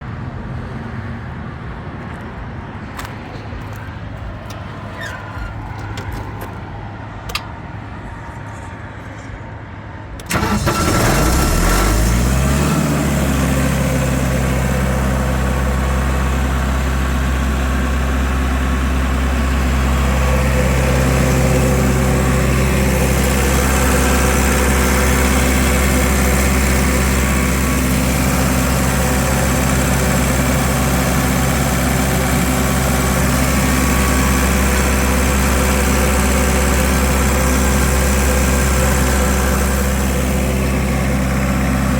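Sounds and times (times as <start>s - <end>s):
air compressor engine starting: 10.2s - 41.9s.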